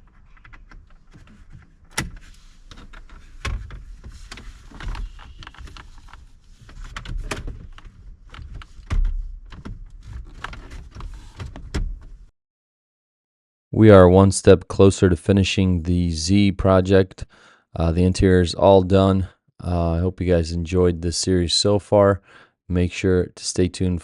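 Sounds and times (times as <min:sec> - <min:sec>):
parts clicking and rattling: 0:00.0 - 0:11.9.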